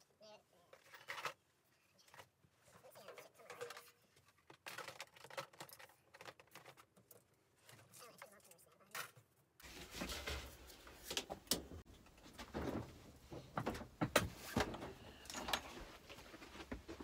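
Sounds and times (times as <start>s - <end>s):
hard objects knocking and scraping: 3.2s - 7.1s.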